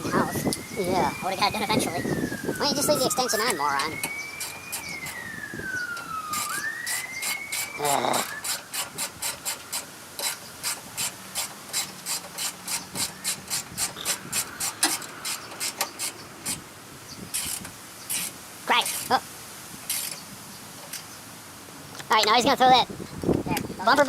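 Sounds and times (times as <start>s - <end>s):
siren wailing: 0.0s - 9.7s, 12.9s - 14.7s.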